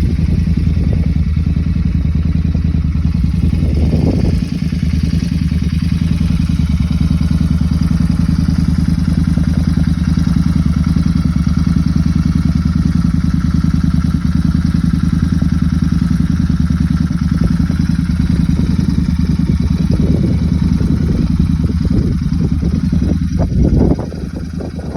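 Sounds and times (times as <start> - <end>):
motorcycle engine idling: 0.0 - 24.9.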